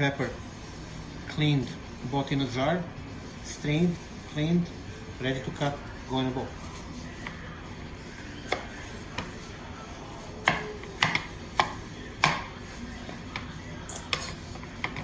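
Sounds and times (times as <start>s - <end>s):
knife chopping on cutting board: 8.4s - 9.4s, 10.4s - 13.5s.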